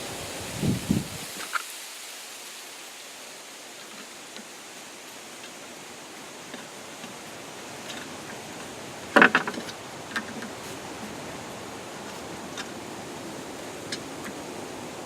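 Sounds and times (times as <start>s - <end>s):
steady hiss: 0.0s - 15.0s
metal clicks and clanks: 7.8s - 11.3s.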